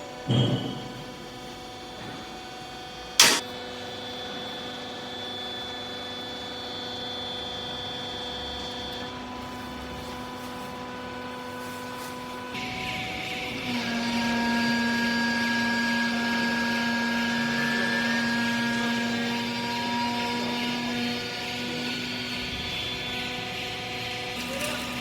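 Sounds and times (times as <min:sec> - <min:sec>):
electric motor and pump humming: 0:03.2 - 0:03.4
sharp clack: 0:03.2 - 0:03.4.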